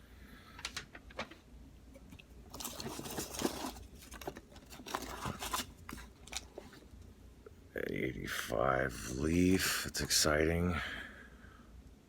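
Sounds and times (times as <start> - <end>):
packaging rustling and crinkling: 2.1 - 7.0.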